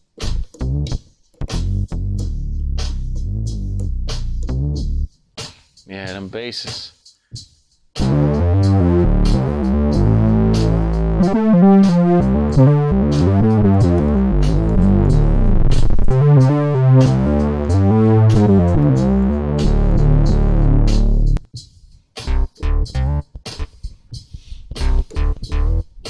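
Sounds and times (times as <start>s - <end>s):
programmed drum beat: 0.0s - 26.0s
hi-hat pulse: 7.0s - 26.0s
synth bass line: 8.0s - 21.4s, 25.2s - 25.8s.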